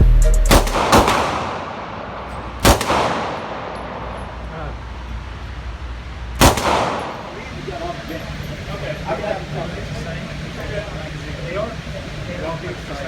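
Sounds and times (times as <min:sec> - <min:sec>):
pistol shots echoing: 0:00.5 - 0:04.3, 0:06.4 - 0:07.5.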